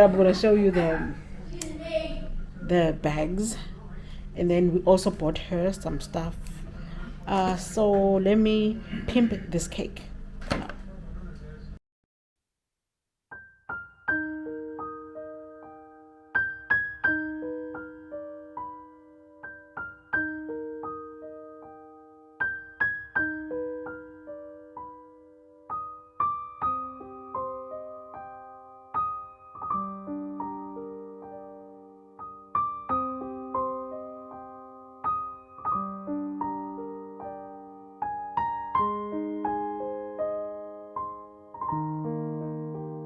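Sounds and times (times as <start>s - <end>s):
gentle solo piano melody: 13.3s - 43.0s.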